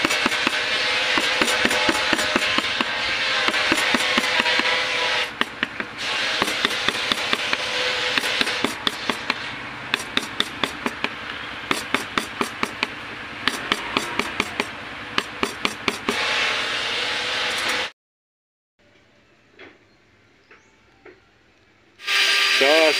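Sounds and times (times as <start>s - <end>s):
mallet striking chisel into wood: 0.0s - 16.2s.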